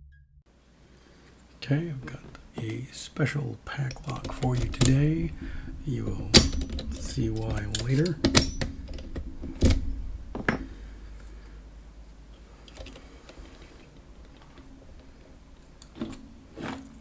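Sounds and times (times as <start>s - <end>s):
padlock and picking tools clicking: 3.9s - 11.4s, 12.3s - 13.6s.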